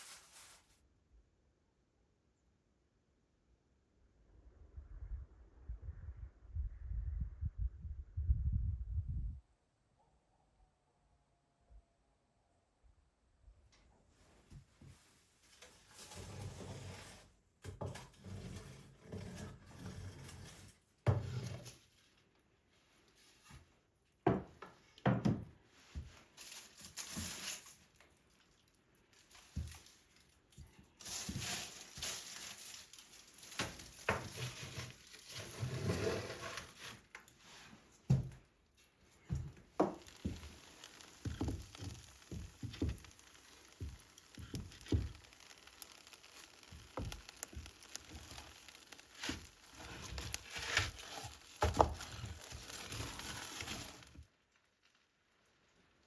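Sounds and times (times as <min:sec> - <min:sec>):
rustling of things handled: 0:00.0 - 0:00.8, 0:14.1 - 0:17.0, 0:19.3 - 0:55.0
objects knocking and thunking: 0:39.2 - 0:54.2.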